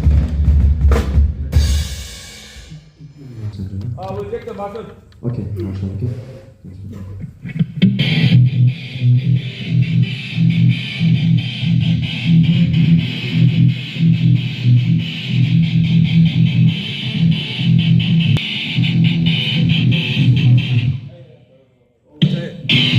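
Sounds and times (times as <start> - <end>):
electric guitar rhythm: 7.2 - 21.1, 22.2 - 22.9.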